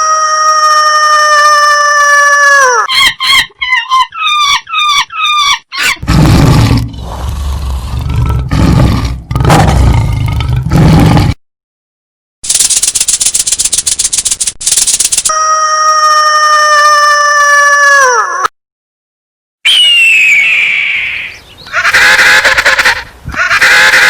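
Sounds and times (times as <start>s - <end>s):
high-pitched animal call: 0.0s - 6.1s, 15.3s - 18.5s, 19.7s - 24.0s.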